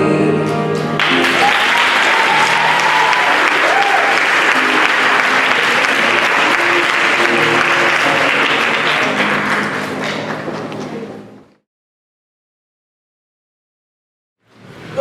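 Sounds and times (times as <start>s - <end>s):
audience applauding: 0.8s - 11.2s.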